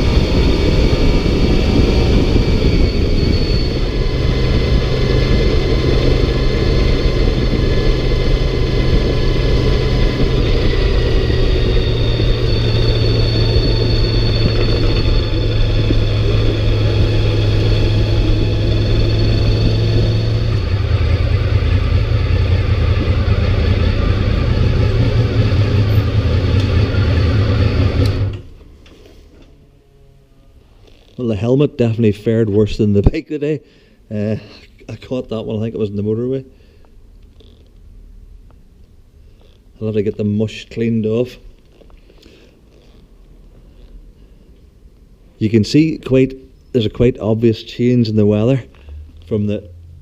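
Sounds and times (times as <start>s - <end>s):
wind noise: 0.0s - 28.5s
motorcycle engine cruising: 0.0s - 28.6s.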